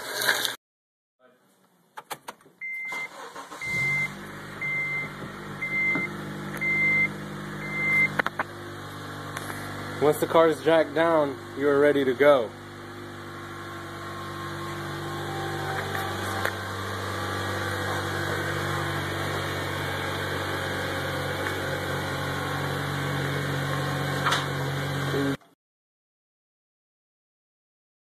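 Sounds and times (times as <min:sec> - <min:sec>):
car engine idling: 0:03.1 - 0:25.4.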